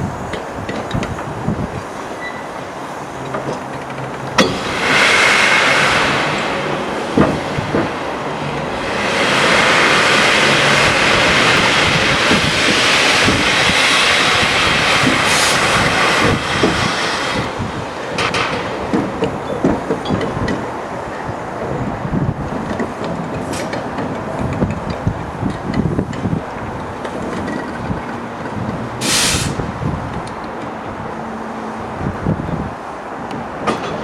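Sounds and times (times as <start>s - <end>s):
steam locomotive hissing: 0.0s - 24.4s, 29.0s - 29.9s
sharp metal clank: 4.4s - 4.8s.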